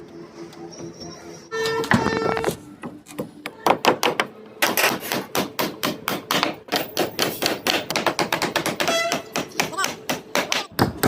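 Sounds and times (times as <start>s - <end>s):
rapid hammer blows: 3.8s - 11.0s.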